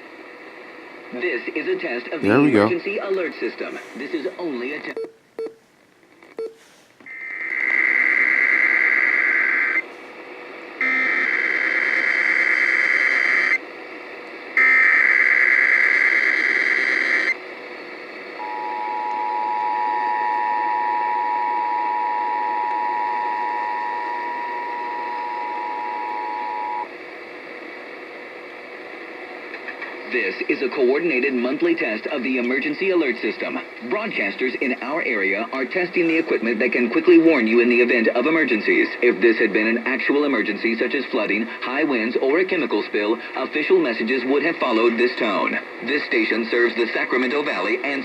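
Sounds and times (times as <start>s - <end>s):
radio static hiss: 0.0s - 5.0s, 5.7s - 19.0s, 20.8s - 48.0s
faint steady whistle: 18.4s - 26.9s.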